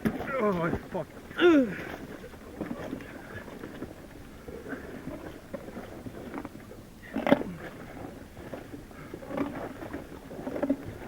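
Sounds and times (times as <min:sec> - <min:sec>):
water splashing: 0:00.0 - 0:11.0
person grunting and gasping: 0:01.4 - 0:01.8.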